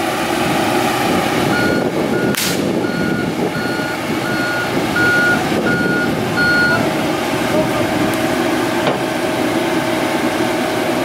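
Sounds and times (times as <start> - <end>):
diesel engine running: 0.0 - 11.0
reversing alarm beeping: 1.5 - 6.9.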